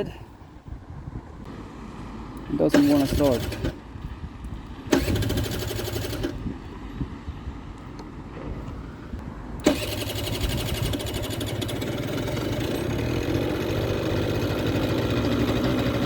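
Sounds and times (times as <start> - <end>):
scooter engine cranking and sputtering: 2.7 - 3.8, 4.9 - 6.5, 9.6 - 16.0
scooter engine running: 2.7 - 3.8, 4.9 - 6.4, 9.6 - 16.0.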